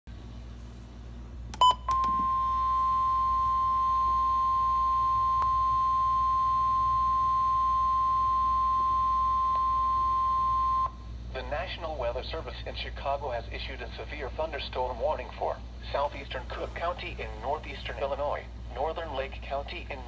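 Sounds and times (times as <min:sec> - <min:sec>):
steady high warning beep: 0:01.6 - 0:11.0.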